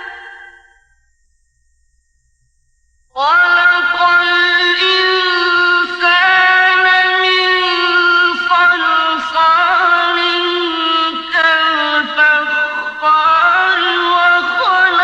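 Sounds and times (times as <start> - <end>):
man reciting melodically: 3.2 - 15.0.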